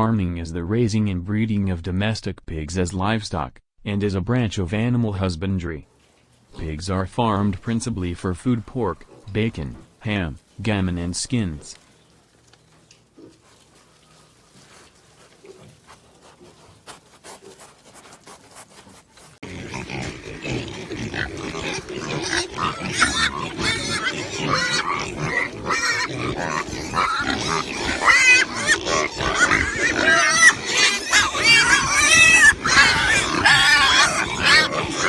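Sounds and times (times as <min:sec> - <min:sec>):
pigs grunting and squealing: 0:18.4 - 0:35.0.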